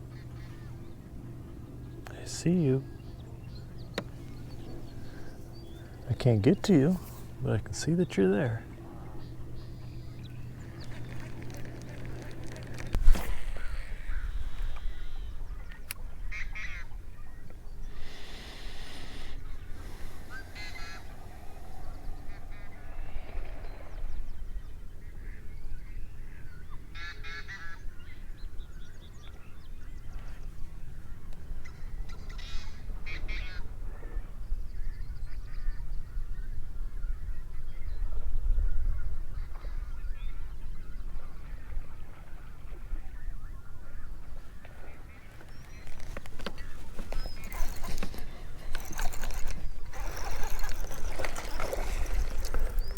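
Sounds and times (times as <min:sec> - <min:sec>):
waterbirds honking: 0:00.0 - 0:25.5, 0:44.0 - 0:52.9.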